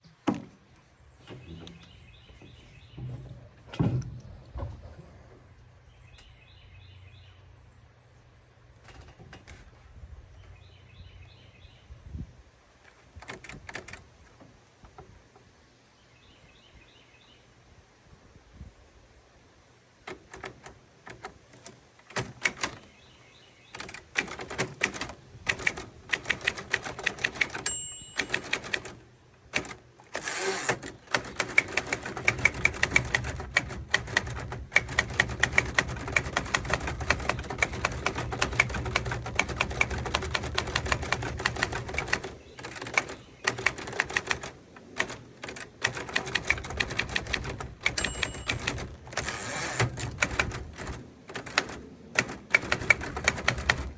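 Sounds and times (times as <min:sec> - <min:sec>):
typewriter keys striking: 0:20.1 - 0:22.9, 0:23.8 - 0:53.9
typewriter margin bell ding: 0:27.4 - 0:29.0, 0:47.8 - 0:50.0.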